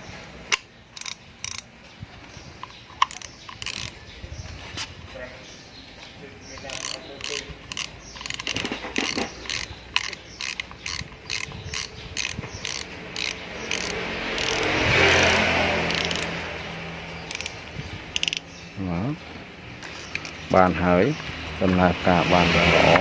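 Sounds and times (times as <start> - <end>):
fishing reel clicking: 1.0 - 1.6, 3.0 - 4.0, 6.6 - 16.4, 17.3 - 17.6, 18.2 - 18.5.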